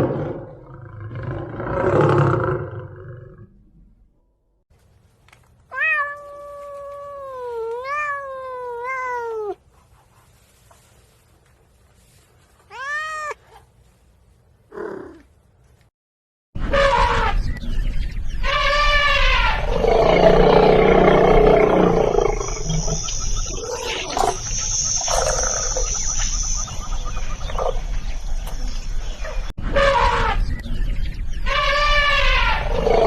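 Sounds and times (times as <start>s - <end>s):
cat meowing: 5.7s - 9.6s, 12.7s - 13.5s.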